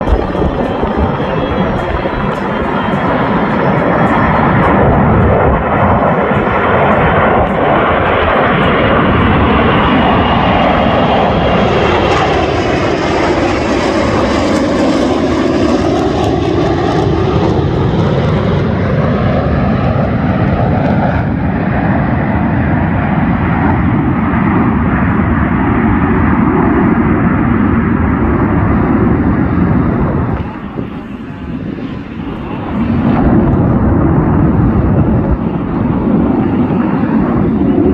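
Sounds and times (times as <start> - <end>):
jet engine roaring flyby: 0.0 - 37.9.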